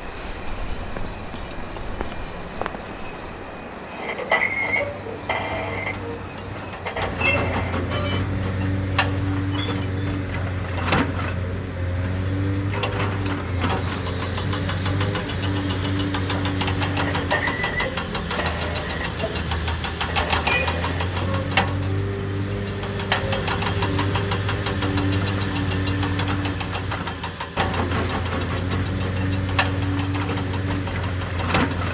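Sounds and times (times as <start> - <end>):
engine idling with knocking tick: 12.7 - 27.9.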